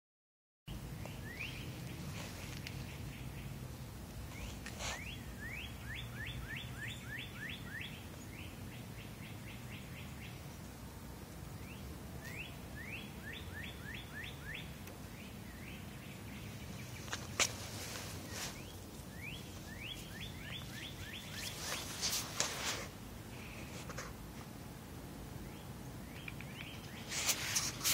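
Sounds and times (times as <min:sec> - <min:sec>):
songbird chirping: 0:00.7 - 0:24.5, 0:25.2 - 0:27.9
sharp click: 0:26.2 - 0:27.0.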